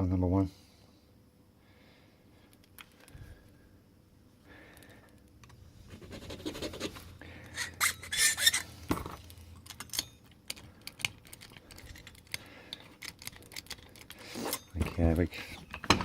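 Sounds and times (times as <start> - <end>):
hand file rasping on metal: 7.6 - 8.7.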